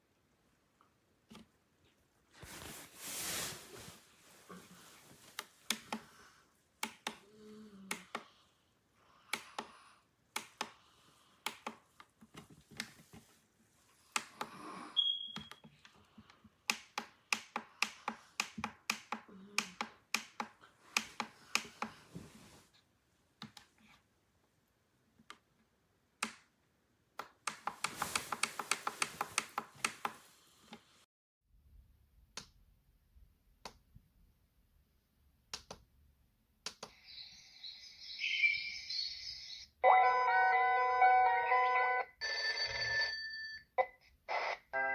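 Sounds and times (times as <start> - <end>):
short high beep: 15.0 - 15.5.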